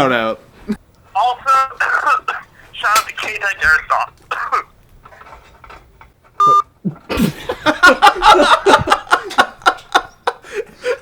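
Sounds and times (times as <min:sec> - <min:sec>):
phone electronic beep: 0:06.4 - 0:06.7
people laughing loudly: 0:07.1 - 0:11.0.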